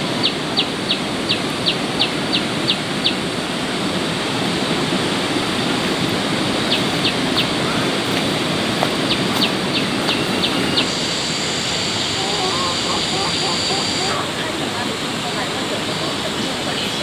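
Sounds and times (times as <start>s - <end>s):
heavy rain falling: 0.0s - 17.0s
bird peeping: 9.0s - 14.3s.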